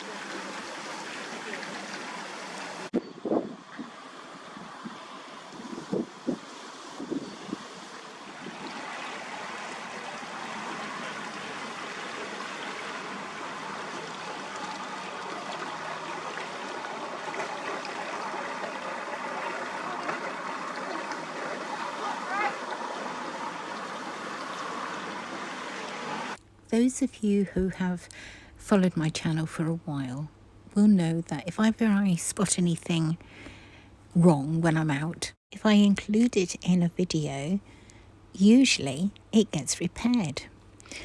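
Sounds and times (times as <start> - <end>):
rushing hiss of water: 3.8 - 26.4.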